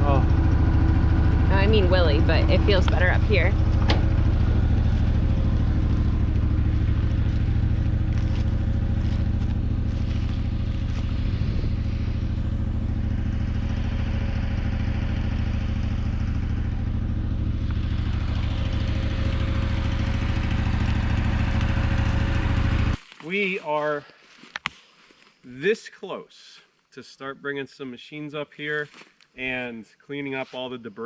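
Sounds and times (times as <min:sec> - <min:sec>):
utility vehicle engine idling: 0:00.0 - 0:23.0.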